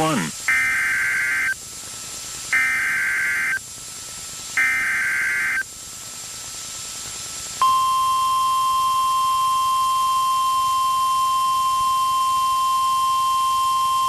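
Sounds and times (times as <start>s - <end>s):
buzzy digital data bursts: 0.0s - 1.6s, 2.5s - 3.6s, 4.6s - 5.7s
steady warning alarm tone: 0.0s - 1.6s, 2.5s - 3.6s, 4.6s - 5.7s, 7.6s - 14.0s.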